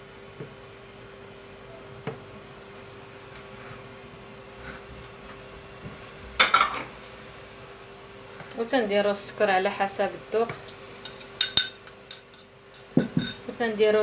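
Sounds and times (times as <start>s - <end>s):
kitchen items clattering: 10.7s - 13.5s.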